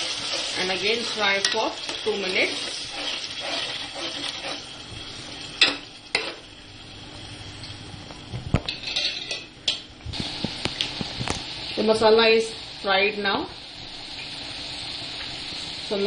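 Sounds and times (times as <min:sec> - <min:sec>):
paste sizzling in oil: 0:00.0 - 0:06.9.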